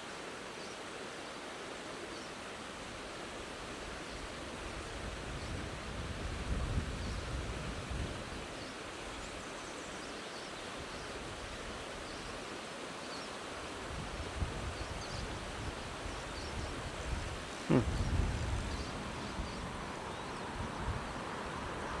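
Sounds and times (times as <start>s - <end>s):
wind rumbling on microphone: 4.7s - 8.5s, 13.8s - 22.0s.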